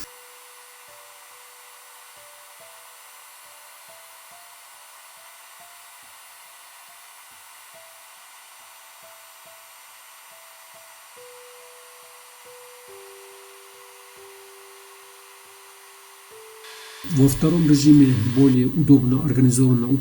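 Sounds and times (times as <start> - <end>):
quiet background music: 0.0 - 20.0
heat gun fan blowing air: 12.2 - 20.0.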